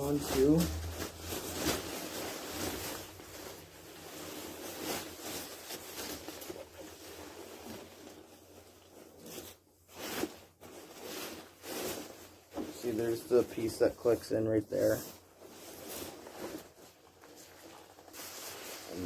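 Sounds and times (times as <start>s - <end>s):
rustling and scraping: 0.0s - 19.0s.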